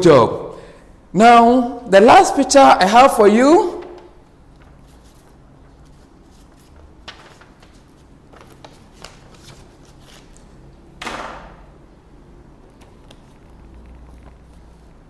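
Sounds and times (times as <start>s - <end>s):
paper rustling and clicking: 3.8s - 11.6s, 12.6s - 15.0s.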